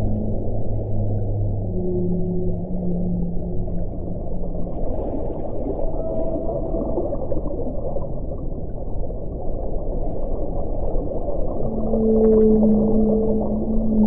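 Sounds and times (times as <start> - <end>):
whale calls: 0.0 - 8.0, 11.5 - 14.0
low underwater rumble: 0.0 - 14.0.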